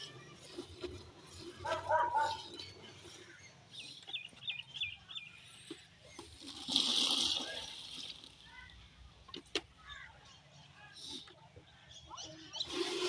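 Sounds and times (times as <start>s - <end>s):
small bird chirping: 0.0s - 6.3s.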